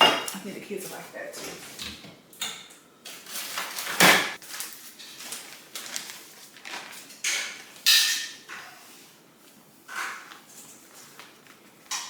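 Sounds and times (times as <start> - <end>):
kitchen items knocking and thudding: 0.0 - 4.4.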